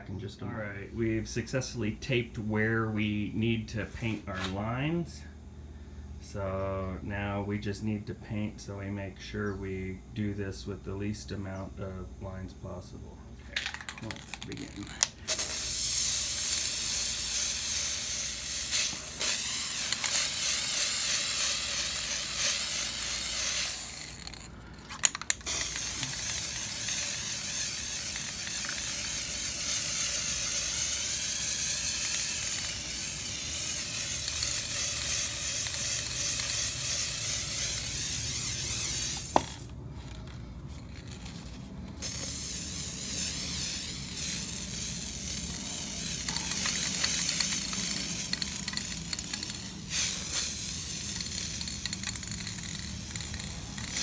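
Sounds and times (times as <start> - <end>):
spray paint can hissing: 13.7 - 54.0.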